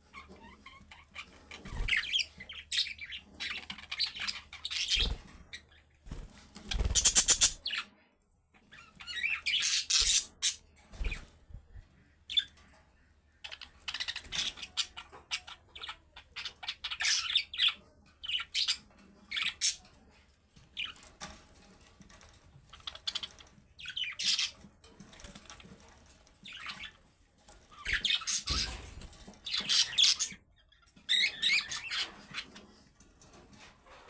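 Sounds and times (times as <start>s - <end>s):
budgerigars chirping and chattering: 0.1s - 7.9s, 8.6s - 11.2s, 13.4s - 19.9s, 22.7s - 24.6s, 27.7s - 32.6s.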